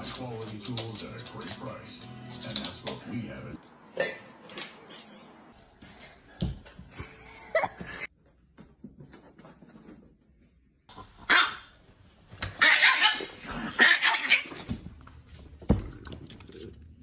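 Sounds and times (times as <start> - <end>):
dog barking: 11.3 - 11.7.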